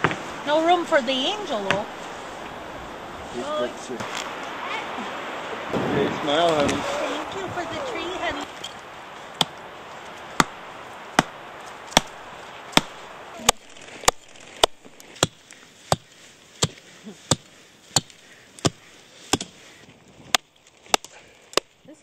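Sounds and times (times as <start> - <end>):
chopping blows into tree trunk: 10.3 - 19.6.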